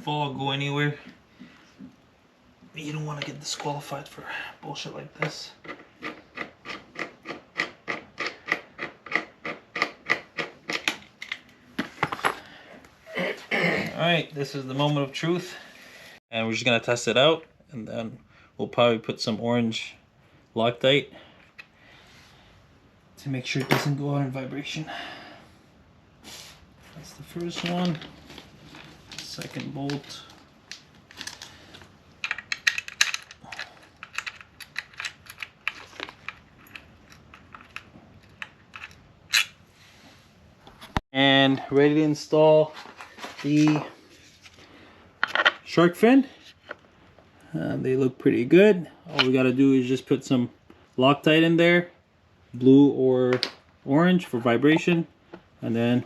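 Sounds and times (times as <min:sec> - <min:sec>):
hand tool and metal clicks: 0:32.2 - 0:39.6.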